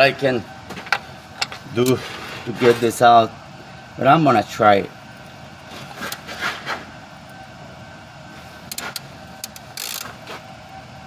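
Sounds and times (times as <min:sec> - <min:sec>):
faint background hum: 0:00.0 - 0:11.0
hand tools clicking on metal: 0:08.7 - 0:10.2.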